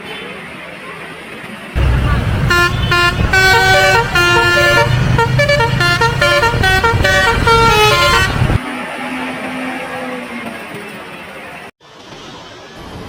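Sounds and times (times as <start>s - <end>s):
bus engine: 0.0s - 13.0s
bus multi-tone horn tune: 1.8s - 8.6s.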